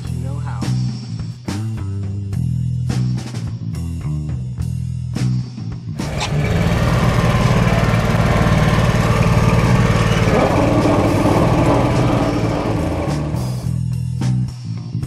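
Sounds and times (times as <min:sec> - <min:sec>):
small engine running: 0:06.0 - 0:13.7.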